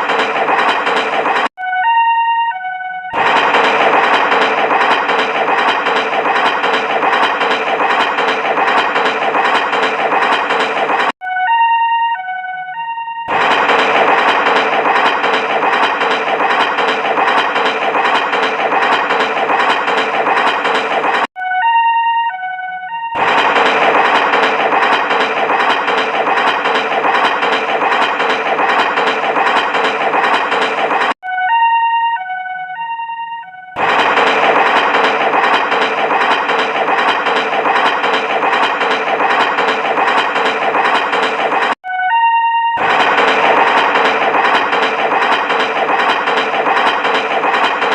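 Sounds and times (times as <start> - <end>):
train chugging rumble: 0.0 - 1.6, 3.2 - 11.2, 13.3 - 21.4, 23.2 - 31.2, 33.8 - 41.8, 42.8 - 47.9
two-tone train horn: 1.6 - 5.1, 11.2 - 14.7, 21.4 - 23.2, 31.2 - 33.8, 41.8 - 43.8.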